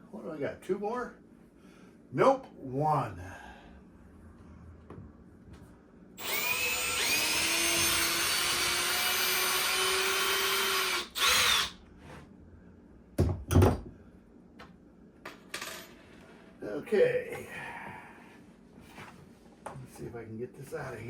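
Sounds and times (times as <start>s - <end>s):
power drill whine: 6.2s - 11.8s.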